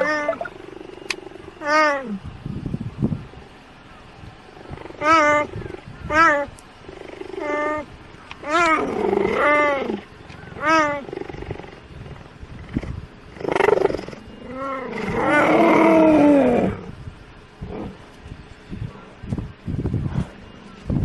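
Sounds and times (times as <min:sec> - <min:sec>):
cheetah calling: 0:00.0 - 0:02.3, 0:03.2 - 0:17.0.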